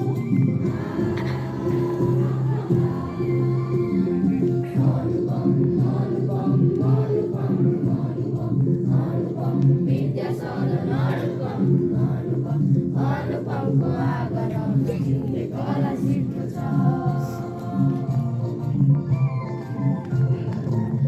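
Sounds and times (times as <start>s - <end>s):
children singing in chorus: 0.6s - 18.4s.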